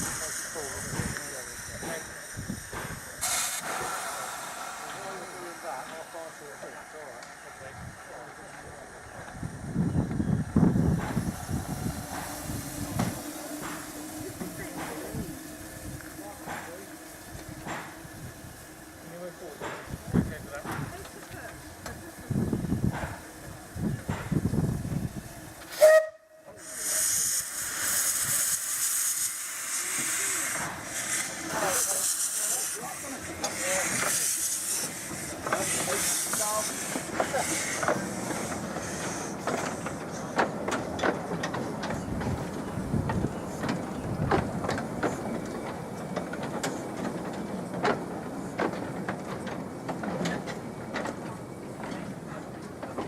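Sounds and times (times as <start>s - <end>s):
wheels clacking over rail joints: 0.0s - 25.8s, 30.0s - 53.0s
steam hissing: 0.0s - 53.0s
steam locomotive rumbling: 0.0s - 53.0s
steam whistle toot: 25.7s - 26.5s.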